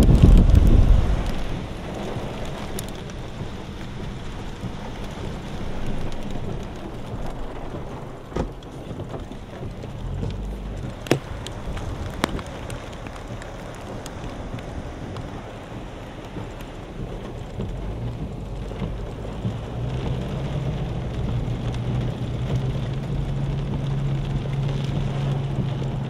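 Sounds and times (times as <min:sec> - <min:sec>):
wind rushing: 0:00.0 - 0:08.3
rain: 0:00.0 - 0:26.0.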